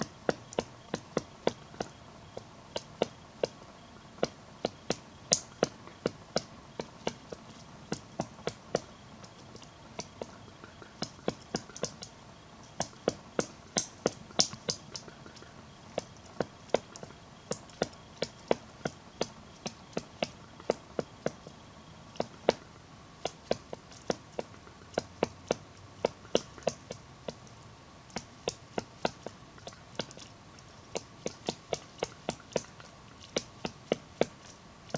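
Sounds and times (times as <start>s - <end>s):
woodpecker knocking on wood: 22.2s - 27.5s.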